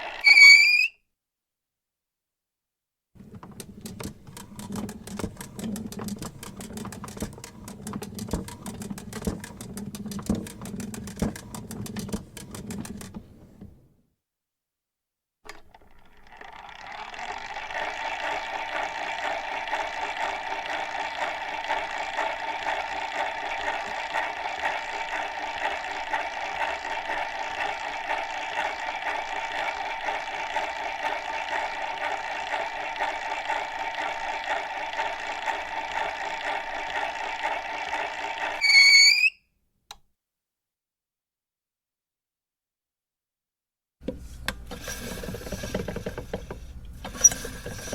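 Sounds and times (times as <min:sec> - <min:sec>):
rising squeal: 0:00.0 - 0:01.0, 0:38.6 - 0:39.4.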